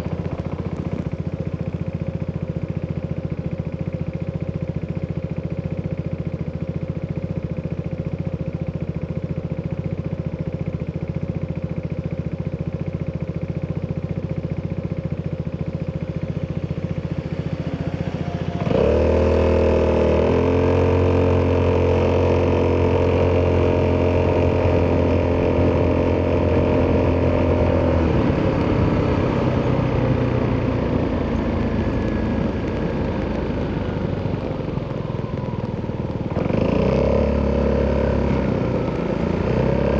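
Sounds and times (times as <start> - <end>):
scooter engine revving: 14.2 - 39.9.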